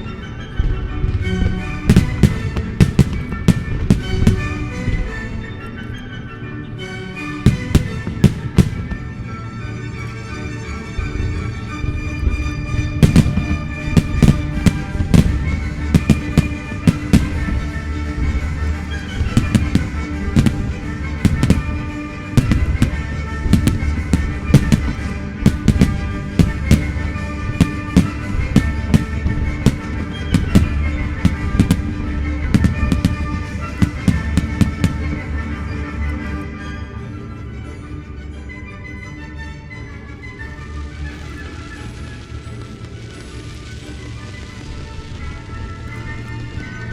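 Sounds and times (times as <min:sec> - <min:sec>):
music with long held notes: 0:00.0 - 0:46.9
firework bangs: 0:00.6 - 0:05.5, 0:07.4 - 0:09.5, 0:10.9 - 0:35.8, 0:40.9 - 0:46.3.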